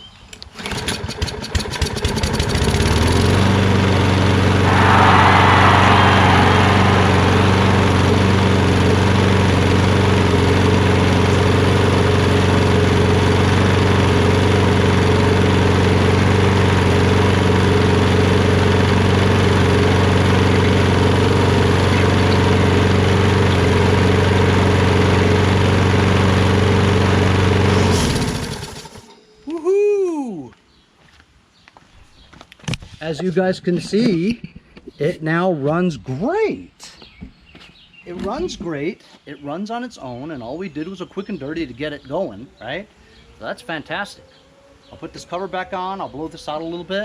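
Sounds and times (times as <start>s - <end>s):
lawn mower engine running: 0.6s - 4.6s, 6.4s - 29.0s.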